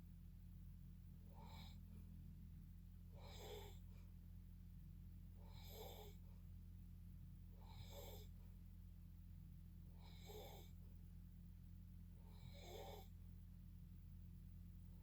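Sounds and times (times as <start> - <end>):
steady low hum: 0.0 - 15.0
faint rasping snoring: 1.3 - 1.9, 3.1 - 4.0, 5.4 - 6.3, 7.6 - 8.4, 9.9 - 10.8, 12.2 - 13.2.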